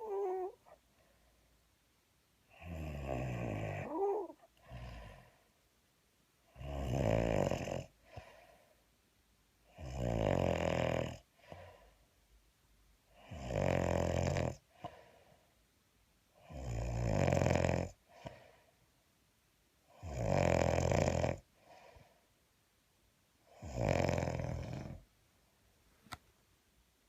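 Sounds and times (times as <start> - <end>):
soft breath: 0.0 - 1.6, 3.8 - 5.6, 8.0 - 8.9, 11.3 - 12.1, 14.7 - 15.6, 18.0 - 18.9, 21.5 - 22.4
man snoring: 2.5 - 5.3, 6.5 - 7.9, 9.7 - 11.2, 13.2 - 14.6, 16.4 - 18.0, 19.9 - 21.5, 23.5 - 25.0.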